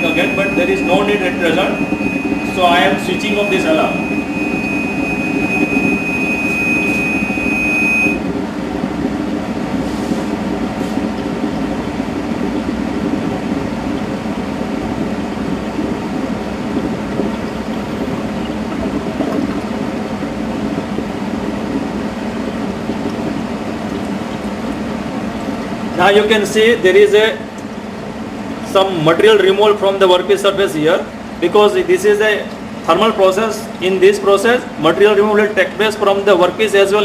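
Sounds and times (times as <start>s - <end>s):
alarm steady high tone: 0.0s - 8.3s
machine hum: 0.0s - 37.0s.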